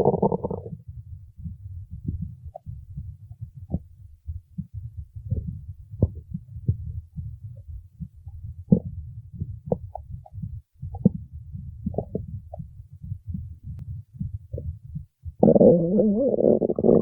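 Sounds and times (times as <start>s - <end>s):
stomach growling: 0.0s - 17.0s.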